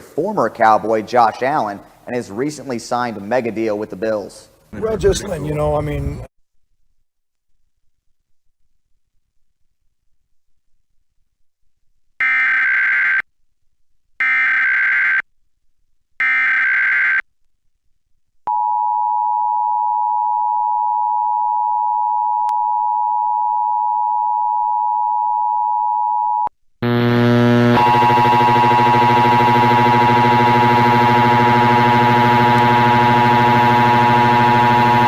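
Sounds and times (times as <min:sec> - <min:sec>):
loud buzzy electronic sound: 0:04.8 - 0:06.3, 0:26.8 - 0:35.0.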